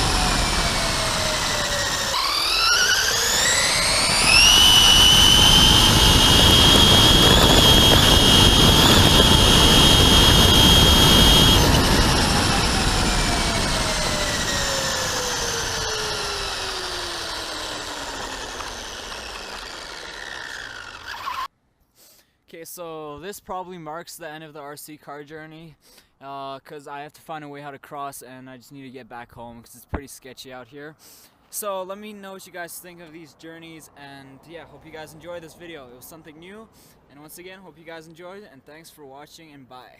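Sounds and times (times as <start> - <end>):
rc car electric motor whining: 0.0 - 21.5.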